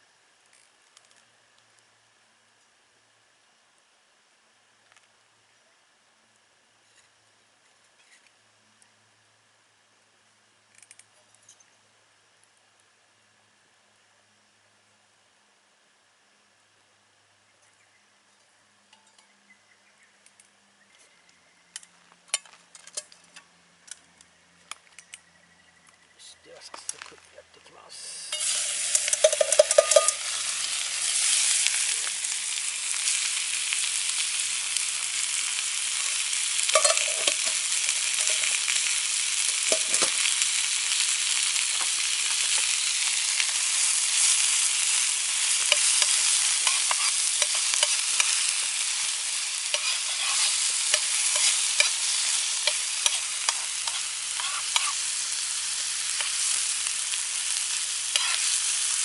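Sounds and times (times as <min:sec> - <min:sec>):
food sizzling in a frying pan: 0:27.9 - 0:59.0
pan clinking: 0:28.3 - 0:30.8, 0:36.7 - 0:38.6.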